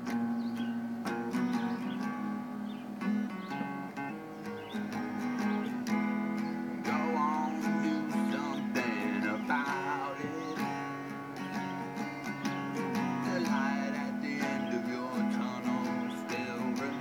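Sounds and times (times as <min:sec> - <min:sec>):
bending guitar melody: 0:00.0 - 0:17.0
strummed guitar chords: 0:00.0 - 0:17.0.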